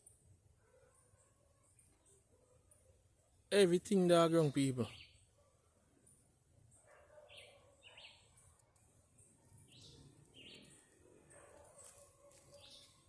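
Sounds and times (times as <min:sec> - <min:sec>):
faint bird chirps: 0:04.8 - 0:13.0.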